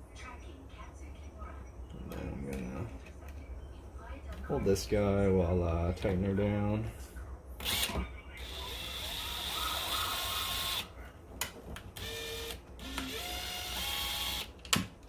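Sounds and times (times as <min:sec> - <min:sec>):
power screwdriver motor whine: 0:07.6 - 0:10.9, 0:12.0 - 0:14.5.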